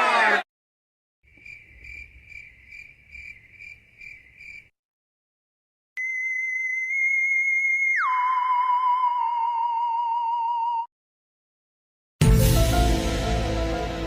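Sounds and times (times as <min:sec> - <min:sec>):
high cricket-like chirp: 0:01.3 - 0:04.7
whistle-like tone: 0:06.0 - 0:10.9.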